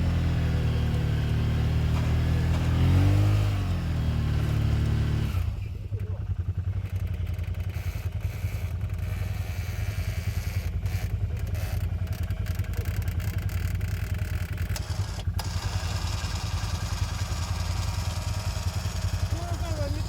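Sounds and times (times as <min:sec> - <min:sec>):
engine running at low revs: 0:00.0 - 0:20.0.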